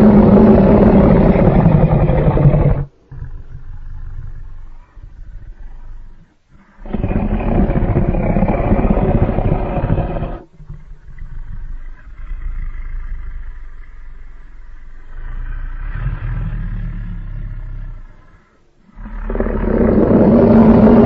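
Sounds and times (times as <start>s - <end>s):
monster roar: 0.0s - 2.9s, 6.8s - 10.4s, 19.0s - 21.0s
monster growl: 0.0s - 4.4s, 6.8s - 10.4s, 19.0s - 21.0s.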